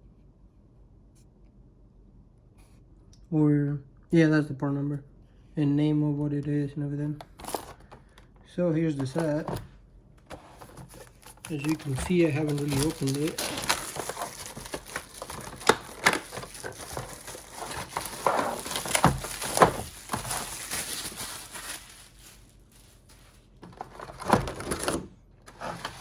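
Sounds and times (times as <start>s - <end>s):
packaging crinkling: 7.3s - 8.2s, 8.9s - 9.7s, 10.3s - 26.0s.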